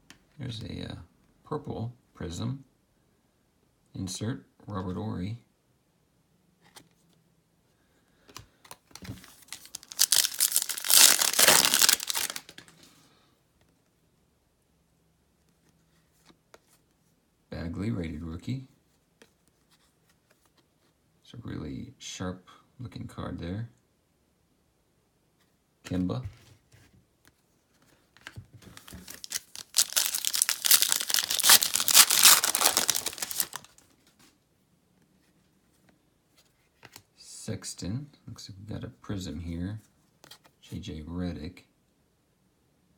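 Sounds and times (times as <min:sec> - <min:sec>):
wrapper tapping and rustling: 0:08.7 - 0:12.8, 0:28.2 - 0:33.8
wrapper crinkling: 0:09.2 - 0:12.7, 0:28.7 - 0:33.9.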